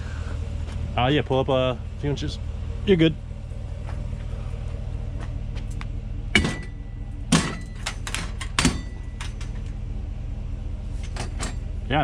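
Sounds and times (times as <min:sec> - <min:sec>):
idling truck engine hum: 0:00.0 - 0:12.0
metal ringing tone: 0:06.3 - 0:09.6
brass headboard clanking: 0:06.4 - 0:09.6.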